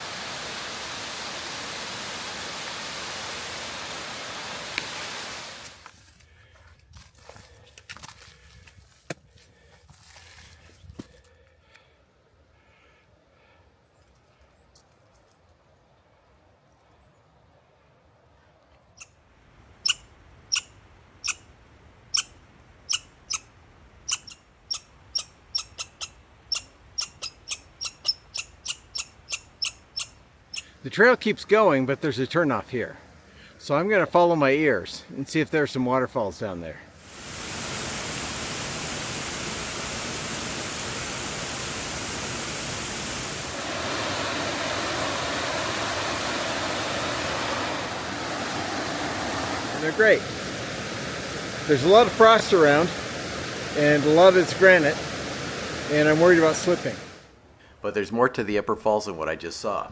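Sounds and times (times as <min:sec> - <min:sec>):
waterfall rushing: 0:00.0 - 0:05.8, 0:37.0 - 0:57.3
footsteps on icy trail: 0:05.6 - 0:11.7.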